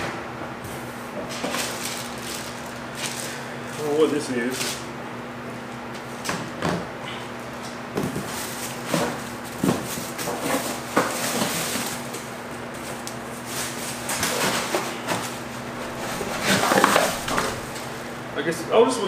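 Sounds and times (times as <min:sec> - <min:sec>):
packaging rustling: 0:01.4 - 0:03.4, 0:15.7 - 0:18.0.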